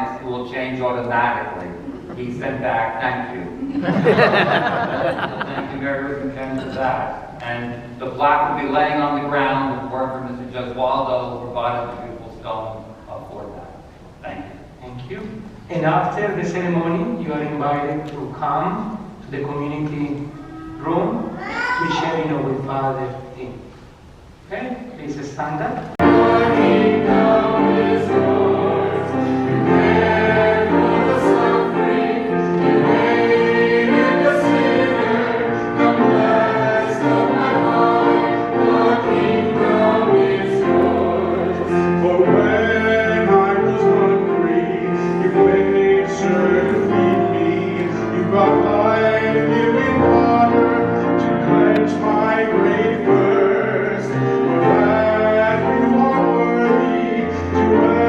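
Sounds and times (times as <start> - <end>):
organ-like accompaniment: 0.0 - 10.2, 24.3 - 58.0
choir singing a hymn: 0.0 - 10.8, 26.0 - 58.0.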